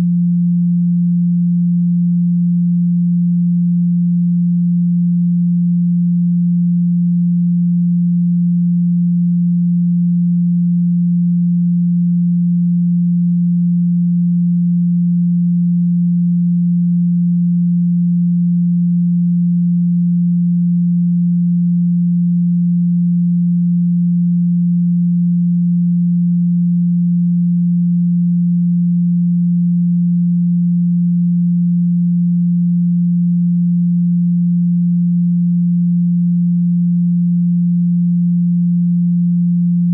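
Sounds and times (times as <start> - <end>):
steady sine tone: 0.0 - 39.9.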